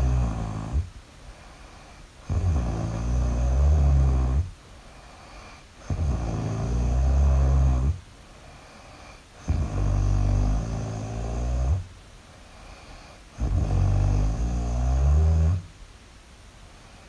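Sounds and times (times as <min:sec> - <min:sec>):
person snoring loudly: 0:00.0 - 0:00.9, 0:02.2 - 0:04.5, 0:05.3 - 0:08.0, 0:08.8 - 0:11.9, 0:13.0 - 0:15.7
quiet breaths: 0:00.0 - 0:17.0.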